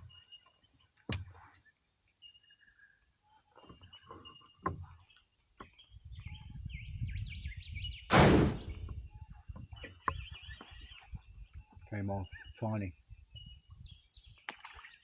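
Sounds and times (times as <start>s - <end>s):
low rumble: 8.1s - 9.0s.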